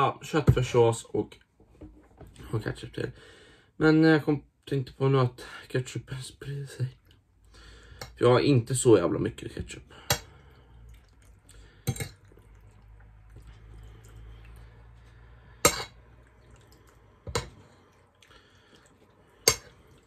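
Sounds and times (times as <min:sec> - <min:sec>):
cutlery and dishes clinking: 0:11.9 - 0:12.2.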